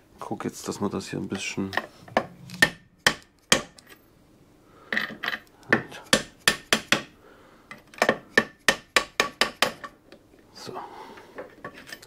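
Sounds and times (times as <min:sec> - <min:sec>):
hammer knocking on metal: 0:02.1 - 0:03.8.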